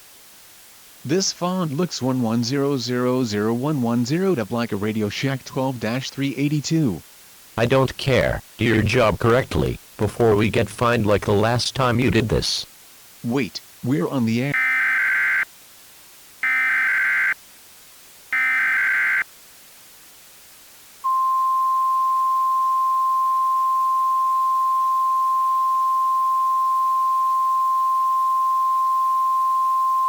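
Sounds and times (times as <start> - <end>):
steady attention signal tone: 21.0 - 30.0.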